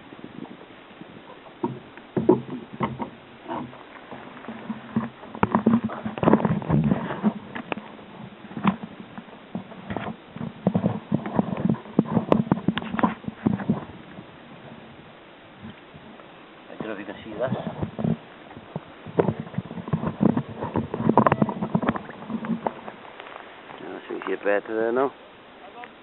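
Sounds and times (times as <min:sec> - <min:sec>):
knocks and clicks on a kayak: 0:01.3 - 0:14.3, 0:17.6 - 0:23.0.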